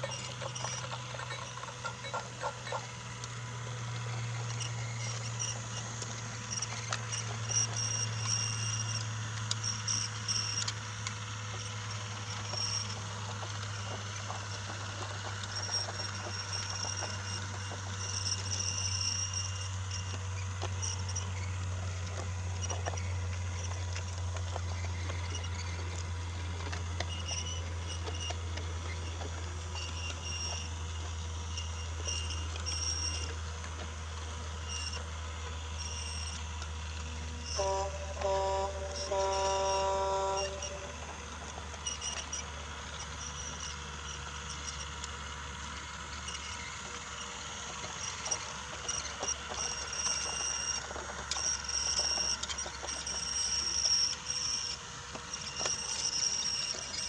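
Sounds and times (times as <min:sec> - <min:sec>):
faint high squeaks: 0:00.0 - 0:02.9, 0:35.8 - 0:44.8
toy train motor hum: 0:00.0 - 0:57.0.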